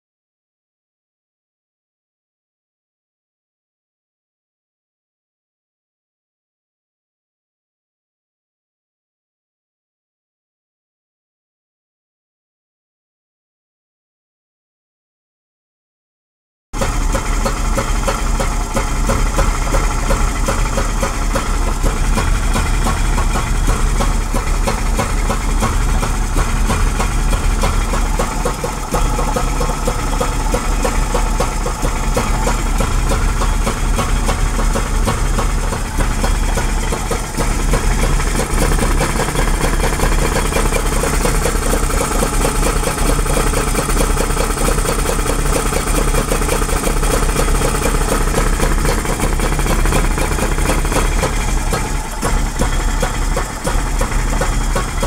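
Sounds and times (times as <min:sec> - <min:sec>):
engine idling: 0:16.8 - 0:55.0.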